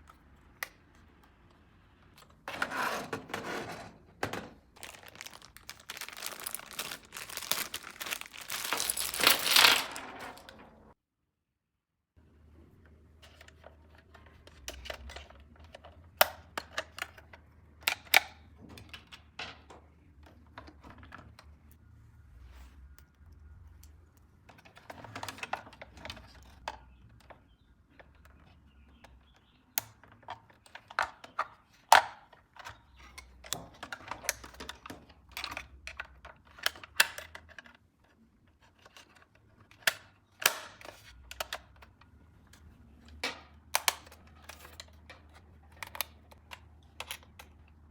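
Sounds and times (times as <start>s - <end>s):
plastic toy parts clicking and rattling: 4.8s - 10.7s, 29.8s - 42.1s, 43.1s - 47.9s.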